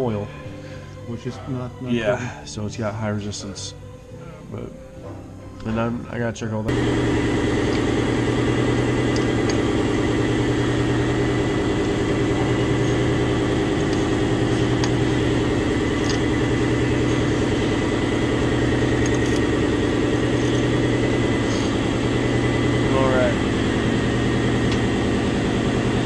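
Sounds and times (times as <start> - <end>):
engine idling: 6.7 - 26.0.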